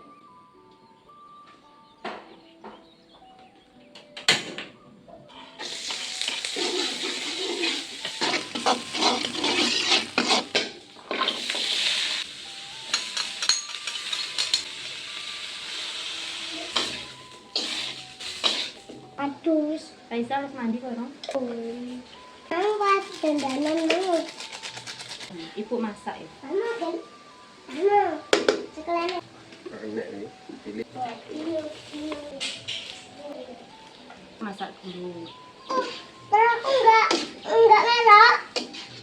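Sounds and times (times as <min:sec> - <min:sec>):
soft background music: 0:00.0 - 0:39.0
utensil scraping a pan: 0:05.4 - 0:12.2, 0:38.6 - 0:39.0
food sizzling in a pan: 0:05.4 - 0:19.1, 0:31.4 - 0:33.1.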